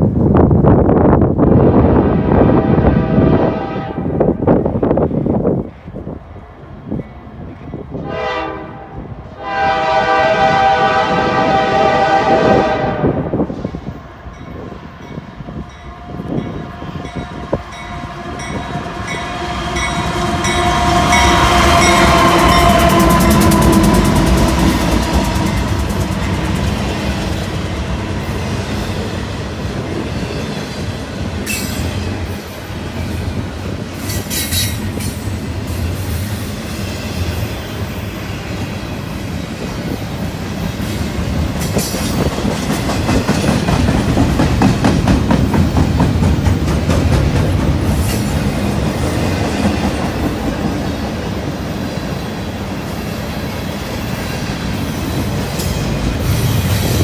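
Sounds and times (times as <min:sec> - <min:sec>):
freight train rumbling past: 0:00.0 - 0:57.0
wheels clacking over rail joints: 0:41.4 - 0:51.6.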